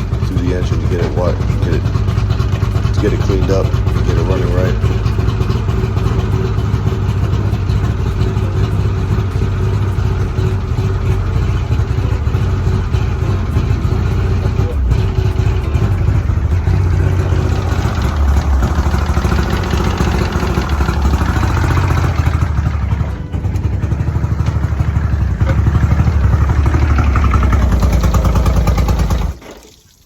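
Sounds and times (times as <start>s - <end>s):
outboard motor fast idle: 0.0s - 29.7s.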